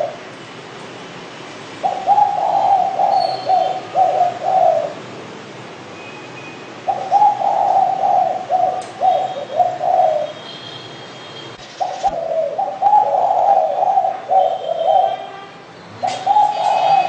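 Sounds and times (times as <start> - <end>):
dove cooing: 0.0 - 0.3, 1.8 - 5.1, 6.8 - 10.4, 11.8 - 15.4, 16.0 - 17.0
faint high bird chirps: 3.1 - 3.9.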